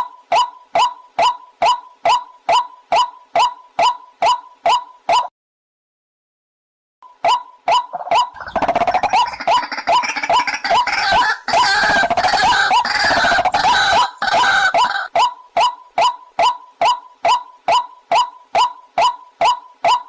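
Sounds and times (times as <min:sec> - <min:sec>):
waterhen croaking calls: 0:07.2 - 0:20.0.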